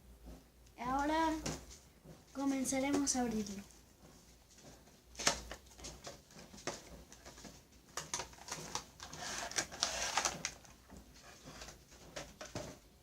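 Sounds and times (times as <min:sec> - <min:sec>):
cardboard packaging clicks and taps: 0:05.2 - 0:11.0
cardboard scraping and rustling: 0:05.2 - 0:12.8.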